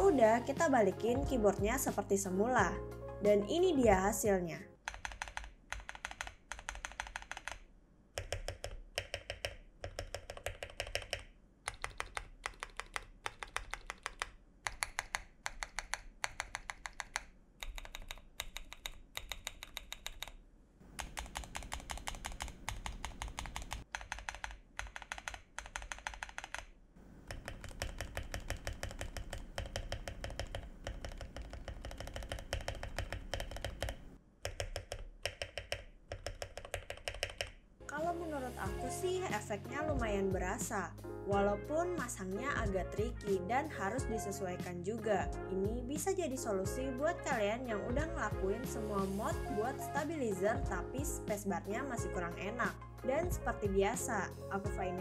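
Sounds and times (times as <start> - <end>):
mechanical keyboard keys clacking: 4.8 - 7.6, 8.2 - 20.4, 21.0 - 37.6.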